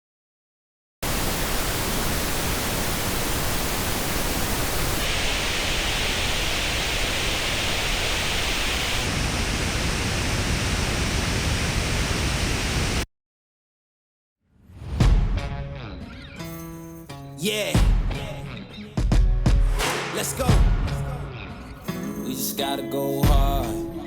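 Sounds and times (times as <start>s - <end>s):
pink noise test signal: 1.0s - 13.1s.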